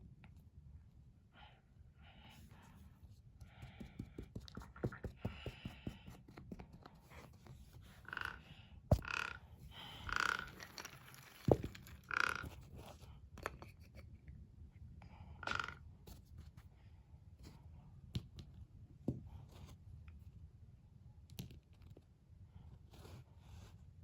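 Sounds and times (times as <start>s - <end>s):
toys clicking and knocking: 10.0s - 12.7s, 15.4s - 15.8s.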